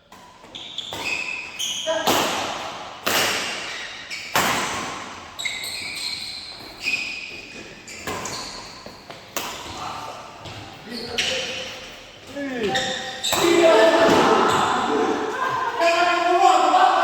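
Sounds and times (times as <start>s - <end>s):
shoes squeaking on court floor: 0.0s - 17.0s
rackets hitting shuttlecock: 0.1s - 5.3s.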